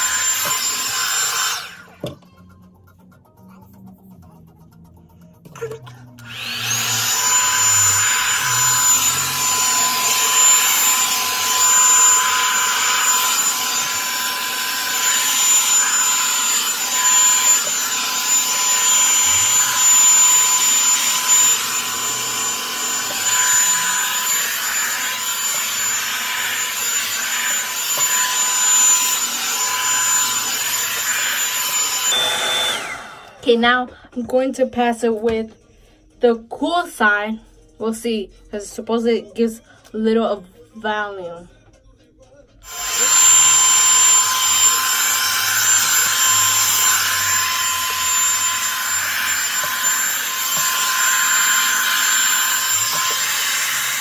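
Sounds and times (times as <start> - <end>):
hair dryer brush whine: 0.0 - 2.2, 6.2 - 33.5, 42.6 - 54.0.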